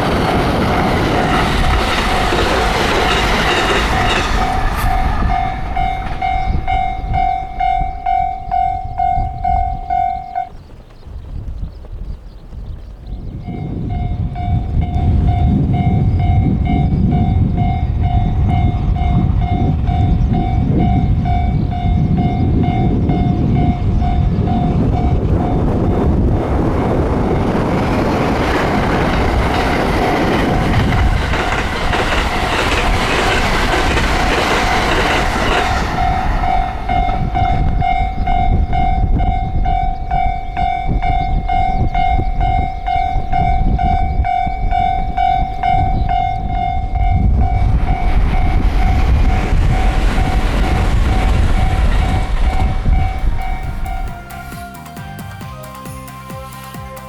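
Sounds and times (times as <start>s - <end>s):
train passing: 0.0s - 10.9s, 13.3s - 57.0s
level crossing bell ringing: 1.3s - 10.5s.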